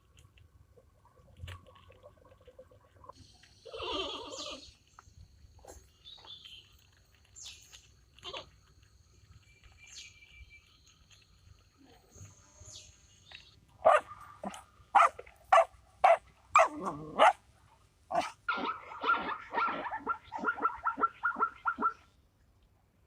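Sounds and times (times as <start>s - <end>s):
dog barking: 13.8s - 17.4s, 18.1s - 21.9s.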